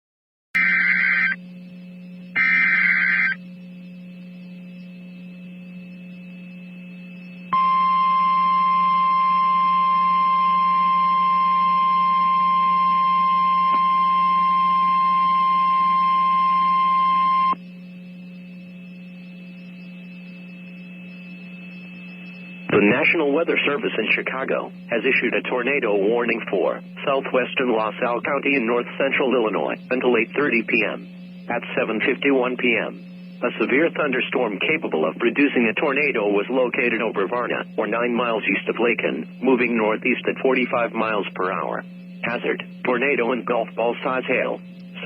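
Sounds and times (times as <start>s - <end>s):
warbling digital data burst: 0.6s - 1.4s, 2.4s - 3.4s
low hum: 0.6s - 45.0s
steady warning alarm tone: 0.6s - 45.0s.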